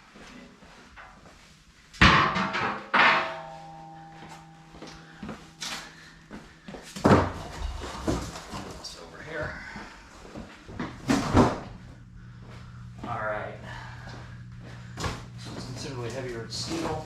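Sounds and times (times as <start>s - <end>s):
metal plate ringing: 2.0s - 8.0s
metal plate clanking: 2.0s - 8.8s
heavy thump: 10.8s - 11.9s.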